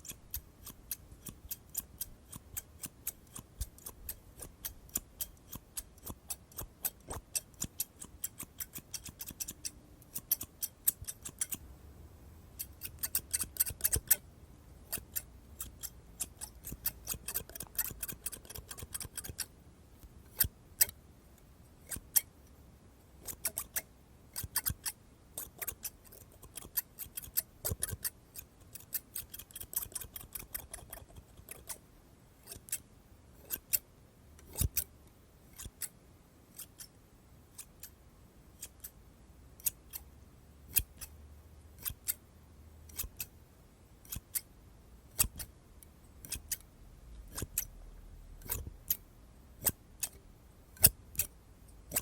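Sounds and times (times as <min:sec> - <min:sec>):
scissors snipping: 0:00.0 - 0:11.6, 0:12.6 - 0:14.2, 0:14.9 - 0:19.5, 0:20.2 - 0:21.0, 0:23.2 - 0:31.8, 0:32.4 - 0:32.8, 0:33.4 - 0:33.8, 0:34.4 - 0:34.9, 0:38.6 - 0:38.9, 0:39.6 - 0:40.0, 0:40.7 - 0:41.1, 0:41.8 - 0:42.2, 0:42.9 - 0:43.3, 0:44.0 - 0:44.4, 0:45.1 - 0:45.5, 0:46.2 - 0:46.6, 0:47.2 - 0:47.7, 0:48.4 - 0:49.0, 0:49.6 - 0:50.2, 0:50.8 - 0:51.3.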